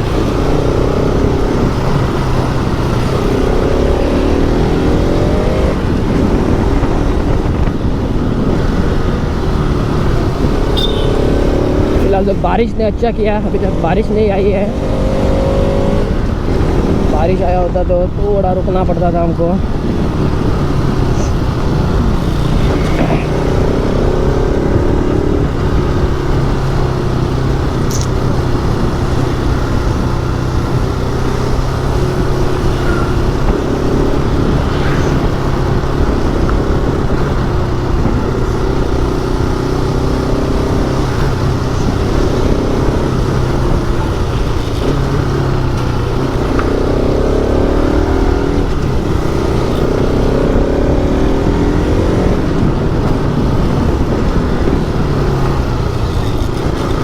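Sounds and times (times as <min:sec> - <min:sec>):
motorcycle engine running: 0:00.0 - 0:57.0
wind and road noise: 0:00.0 - 0:57.0.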